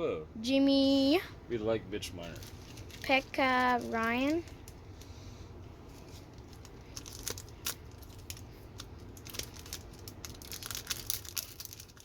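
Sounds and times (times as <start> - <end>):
plastic crinkling: 2.2 - 5.2, 5.9 - 12.0.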